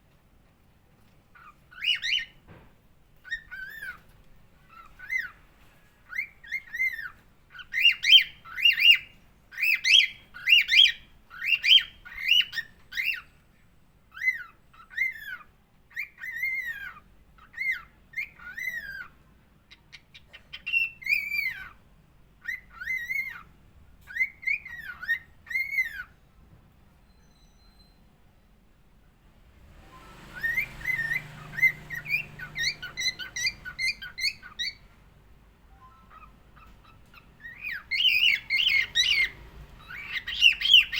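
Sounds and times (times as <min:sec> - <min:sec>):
cockatiel whistling: 0:06.1 - 0:13.3, 0:22.4 - 0:23.5, 0:24.1 - 0:26.1, 0:30.0 - 0:34.8, 0:35.7 - 0:40.9.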